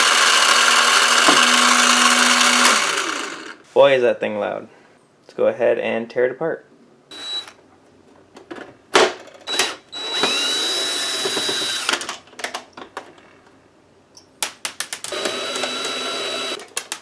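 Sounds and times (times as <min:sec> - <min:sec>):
power screwdriver whirring: 0:00.0 - 0:03.6, 0:09.5 - 0:12.0, 0:15.1 - 0:16.6.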